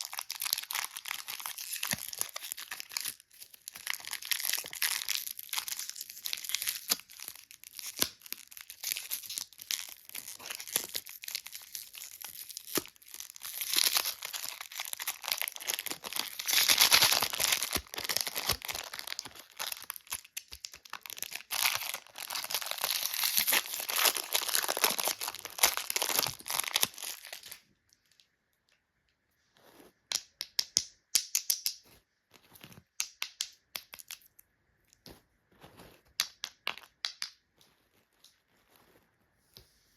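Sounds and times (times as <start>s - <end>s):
plastic wrappers crinkling and tearing: 0.0s - 28.2s.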